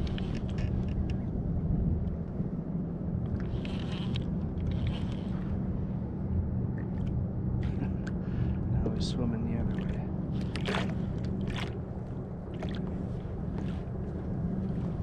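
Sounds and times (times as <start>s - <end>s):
motorboat engine running: 0.0s - 15.0s
water splashing: 9.6s - 11.8s, 12.4s - 13.9s.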